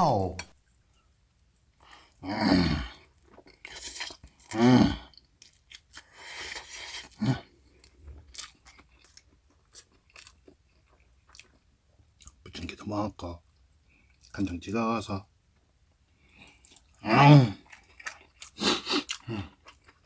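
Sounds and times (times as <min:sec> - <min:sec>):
wordless vocal sounds: 0:00.0 - 0:00.5
man chewing and slurping noodles: 0:01.7 - 0:12.3, 0:16.2 - 0:20.0.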